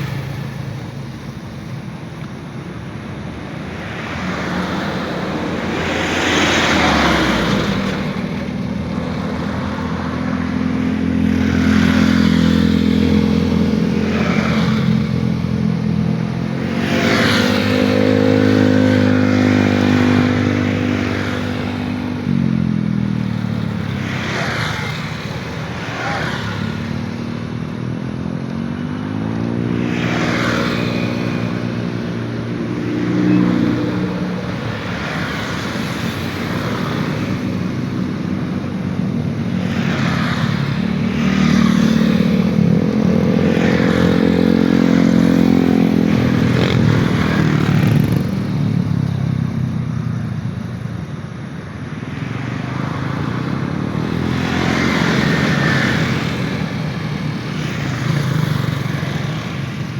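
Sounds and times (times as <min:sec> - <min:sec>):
vehicles passing: 0:00.0 - 0:59.9.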